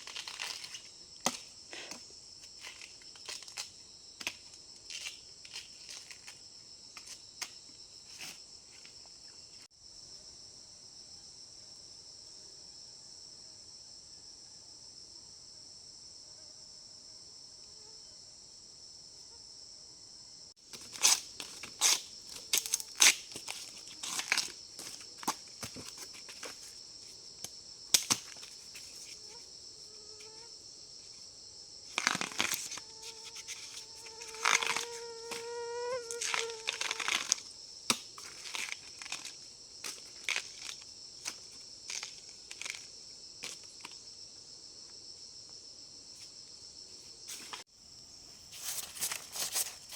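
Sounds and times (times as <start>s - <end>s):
high-pitched insect chorus: 0.0s - 49.9s
sharp snaps and crackles: 20.8s - 25.8s, 27.4s - 28.6s, 36.2s - 44.0s.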